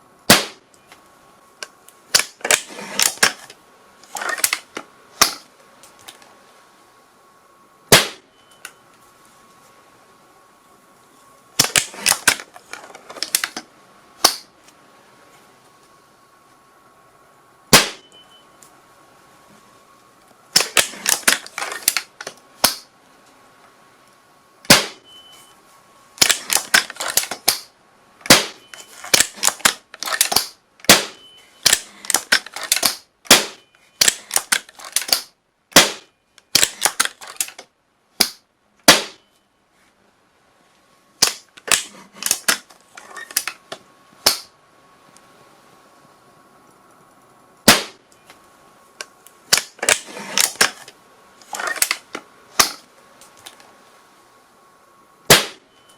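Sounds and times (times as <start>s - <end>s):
gunshots cracking: 0.3s - 0.6s, 7.9s - 8.3s, 17.7s - 18.0s, 24.7s - 25.0s, 28.3s - 34.4s, 35.8s - 37.1s, 38.9s - 39.2s, 47.7s - 48.0s, 55.3s - 55.6s.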